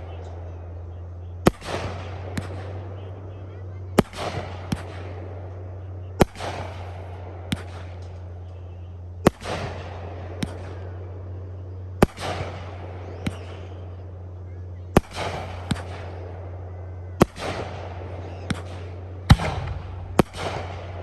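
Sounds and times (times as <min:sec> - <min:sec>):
crackling rumble: 0:00.0 - 0:21.0
fireworks bangs: 0:00.0 - 0:21.0.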